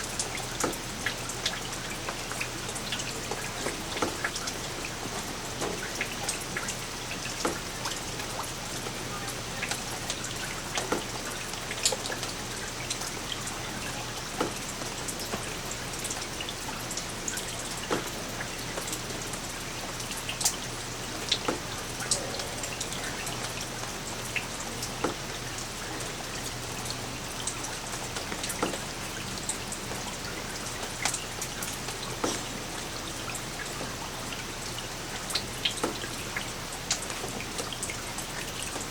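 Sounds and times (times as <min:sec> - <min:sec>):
light rain hiss: 0:00.0 - 0:38.9
raindrops ticking on surface: 0:00.0 - 0:38.9.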